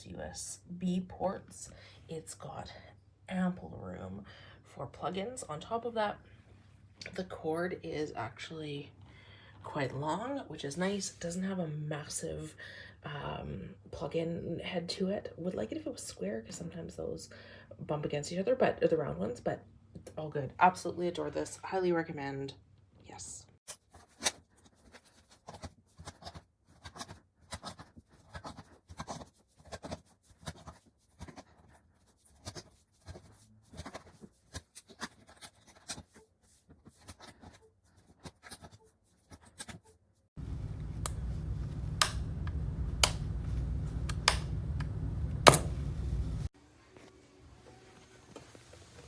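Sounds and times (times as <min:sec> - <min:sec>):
low steady hum: 0:40.4 - 0:46.9
sharp clicks: 0:41.9 - 0:43.2
small clicks and taps: 0:41.9 - 0:43.3.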